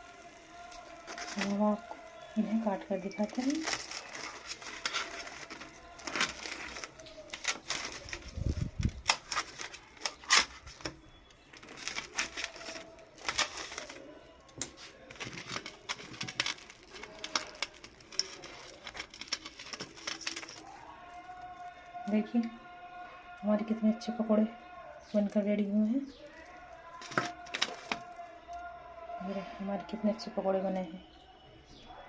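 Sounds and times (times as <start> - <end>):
knife crunching fried food: 0.7 - 2.0, 3.2 - 22.0, 26.1 - 28.2.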